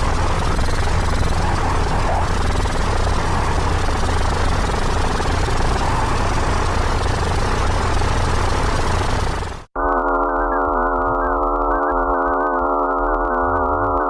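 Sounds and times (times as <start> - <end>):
constant low hum: 0.0 - 9.7.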